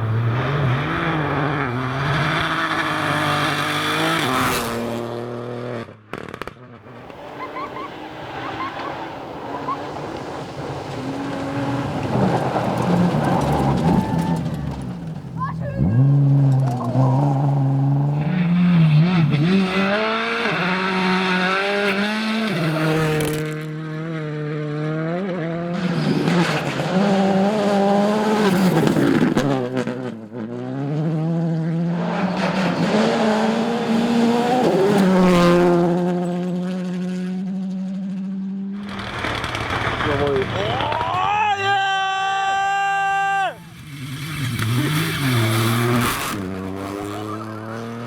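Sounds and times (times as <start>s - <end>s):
rally car engine revving: 0.0s - 41.2s, 43.4s - 48.0s
tyres scrabbling on gravel: 7.0s - 17.9s, 38.8s - 41.4s.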